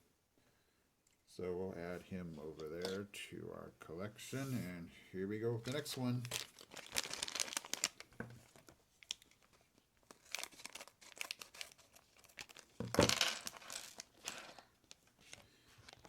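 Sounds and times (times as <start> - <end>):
plastic packet tearing and crinkling: 5.6 - 16.0.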